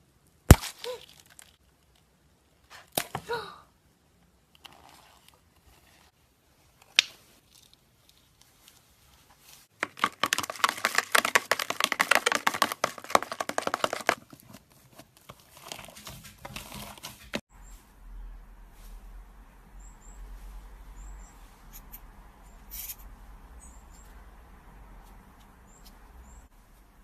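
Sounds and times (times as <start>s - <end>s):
crinkly crackling: 6.8s - 17.4s.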